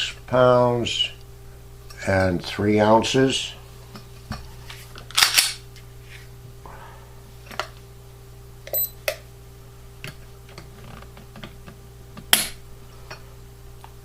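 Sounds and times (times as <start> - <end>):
pistol mechanism clacking: 5.2 - 5.6.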